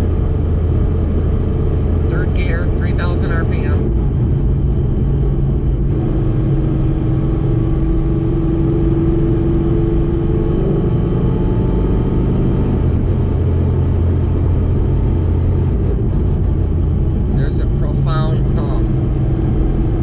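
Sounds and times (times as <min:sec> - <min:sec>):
car engine drone from cabin: 0:00.0 - 0:20.0
mid-pitched hum: 0:00.0 - 0:20.0
transmission gear whine: 0:00.0 - 0:20.0.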